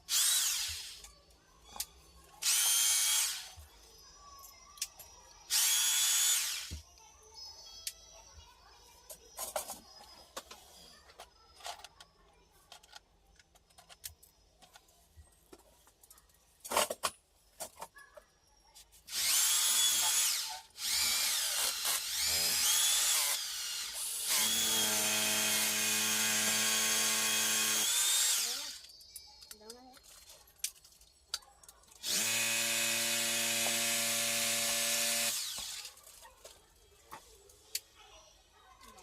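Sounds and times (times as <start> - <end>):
small high-speed motor running: 0.1 - 1.0, 2.4 - 3.5, 5.5 - 6.7, 19.1 - 28.8, 32.0 - 35.9.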